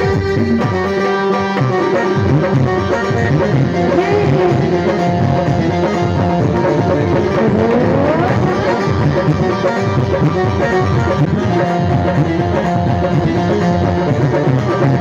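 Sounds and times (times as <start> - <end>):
keyboard melody: 0.0 - 15.0
tabla and drum beat: 0.0 - 15.0.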